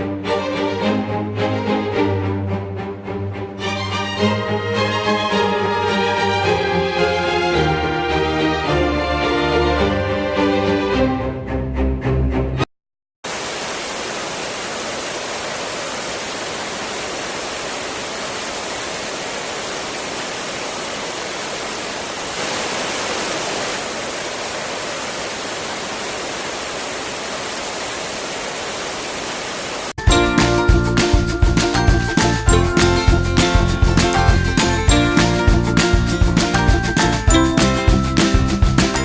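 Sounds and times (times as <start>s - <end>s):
music: 0.0s - 12.6s, 30.0s - 39.0s
water rushing: 13.2s - 39.0s.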